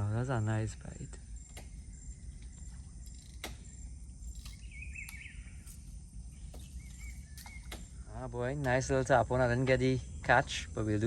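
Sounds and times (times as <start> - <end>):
faint high insect chirp: 0.0 - 11.0
low outdoor background noise: 0.0 - 11.0
warbling bird call: 1.4 - 8.3.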